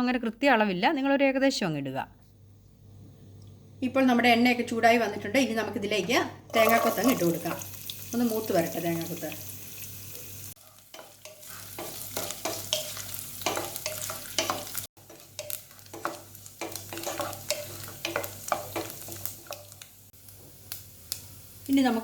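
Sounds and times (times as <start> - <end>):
food sizzling in hot oil: 6.5 - 22.0
spatula stirring in pan: 10.6 - 19.9.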